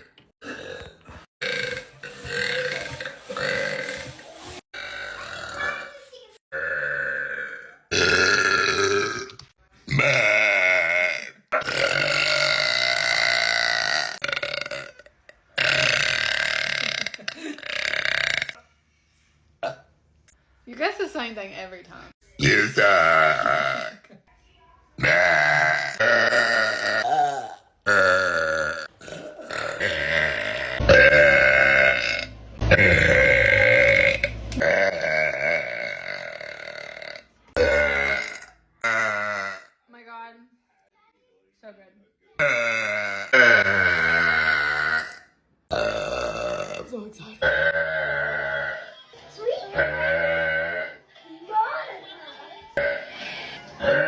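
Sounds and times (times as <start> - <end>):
woman burping: 0.0 - 4.1, 6.5 - 18.6, 19.6 - 19.9, 22.4 - 24.2, 25.0 - 39.8, 42.4 - 48.9, 49.7 - 51.0, 52.8 - 53.2.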